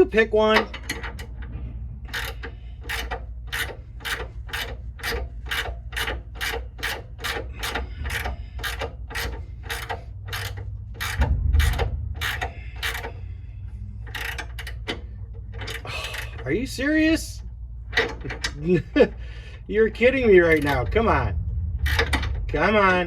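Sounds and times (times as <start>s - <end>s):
low rumble: 0.0s - 23.0s
ratchet wrench clicking: 2.1s - 16.5s, 20.4s - 20.9s.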